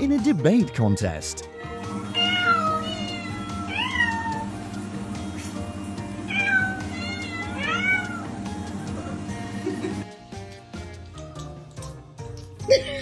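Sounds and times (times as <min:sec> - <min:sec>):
background music: 0:00.0 - 0:13.0
cat meowing: 0:02.1 - 0:04.4, 0:06.3 - 0:08.4.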